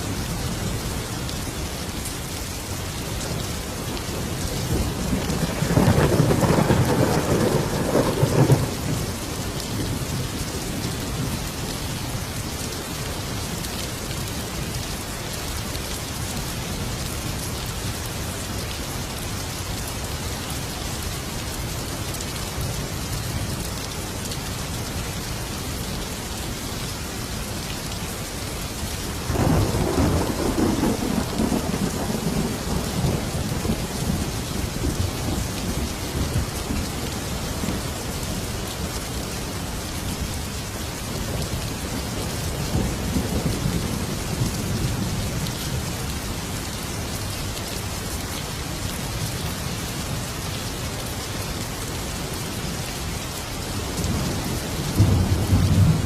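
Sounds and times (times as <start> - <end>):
heavy rain falling: 0.0 - 56.0
thunderclap rumbling: 4.6 - 9.2, 29.2 - 36.8.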